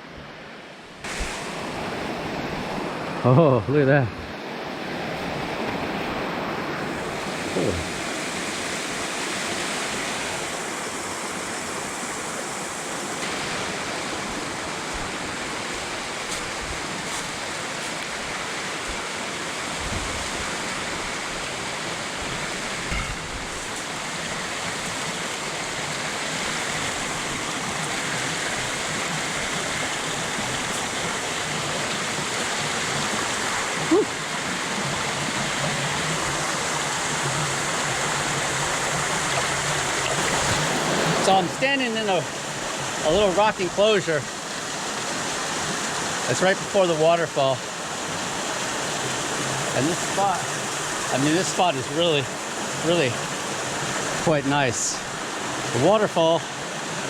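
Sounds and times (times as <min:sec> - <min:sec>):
waterfall and creek rushing: 0:00.0 - 0:57.0
sharp knock: 0:22.9 - 0:23.4.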